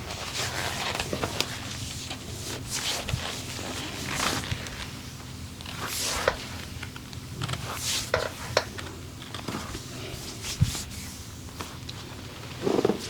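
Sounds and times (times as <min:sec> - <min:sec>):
hands rubbing skin: 0:07.6 - 0:08.7, 0:09.6 - 0:11.3.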